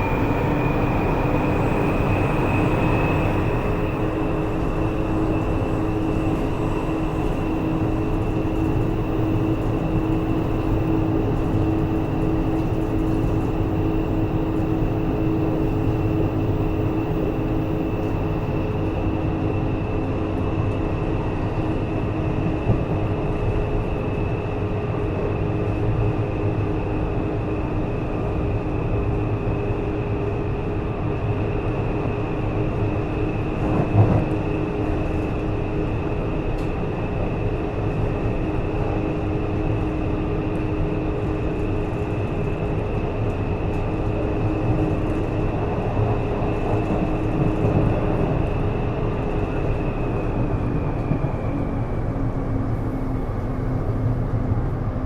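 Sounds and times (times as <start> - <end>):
steady high whine: 0.0 - 20.0
train wheels rumbling on track: 0.0 - 55.0.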